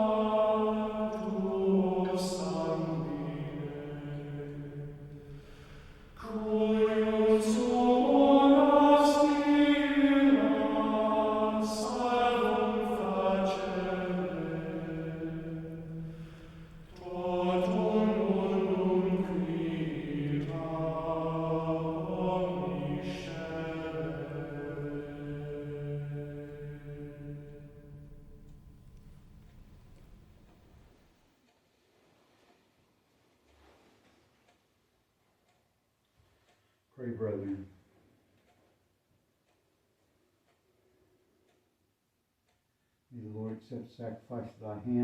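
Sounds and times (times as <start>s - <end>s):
voices singing chant: 0.0s - 30.4s.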